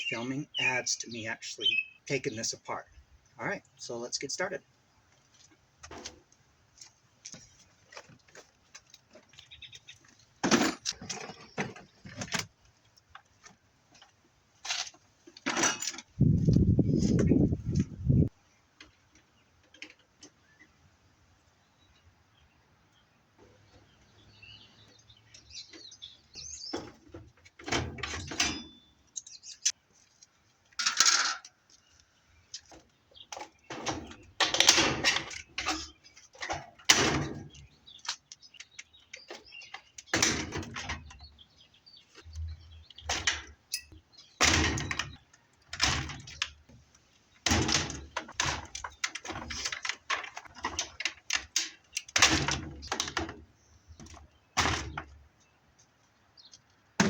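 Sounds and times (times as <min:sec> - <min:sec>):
sheet-metal panels knocking and rattling: 0:44.4 - 0:46.4, 0:47.4 - 0:51.6, 0:52.2 - 0:53.4.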